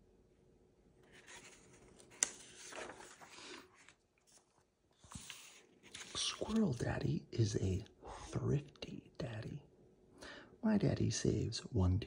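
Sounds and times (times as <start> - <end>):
book pages turning: 1.0 - 7.2.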